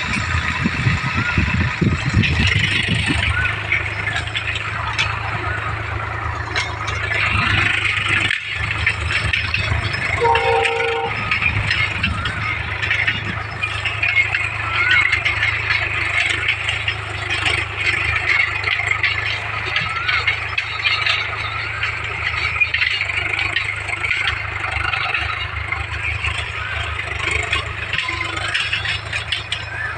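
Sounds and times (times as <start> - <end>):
metallic rattle and clatter: 0.0 - 29.9
tractor engine running: 0.0 - 29.9
short horn-like tone: 10.2 - 11.3.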